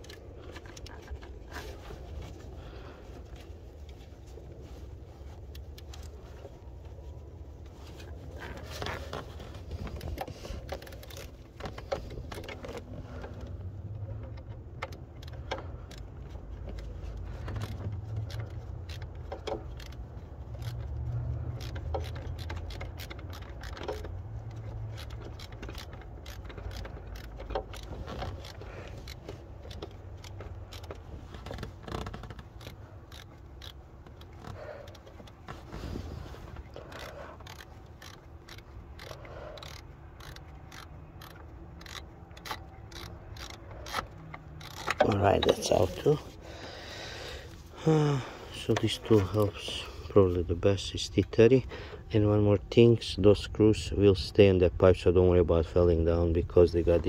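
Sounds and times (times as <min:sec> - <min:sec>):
low background rumble: 0:00.0 - 0:57.0
metal hand tools clicking and scraping: 0:14.2 - 0:46.4.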